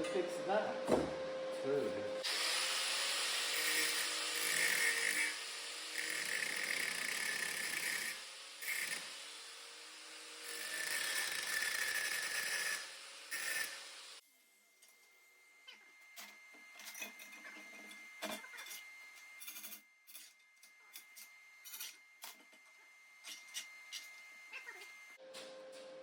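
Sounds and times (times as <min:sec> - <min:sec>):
angle grinder on steel: 0:02.2 - 0:14.2, 0:16.8 - 0:22.4.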